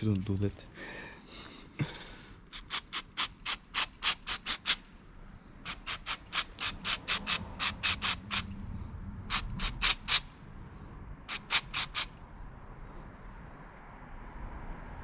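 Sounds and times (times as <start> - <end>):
aerosol spray hissing squirts: 2.5 - 4.8, 5.7 - 8.5, 9.3 - 10.3, 11.3 - 12.1.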